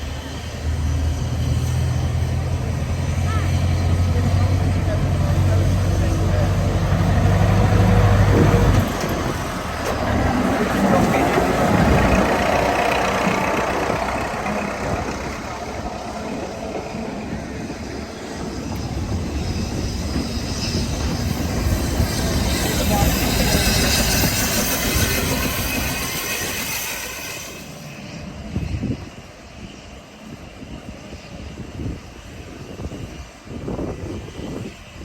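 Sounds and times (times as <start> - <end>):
low engine hum: 0.0 - 17.2
train running rumble: 0.0 - 35.0.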